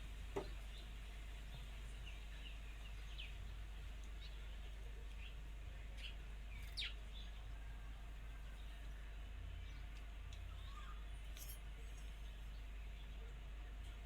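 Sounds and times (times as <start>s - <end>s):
birds chirping: 0.2s - 14.0s.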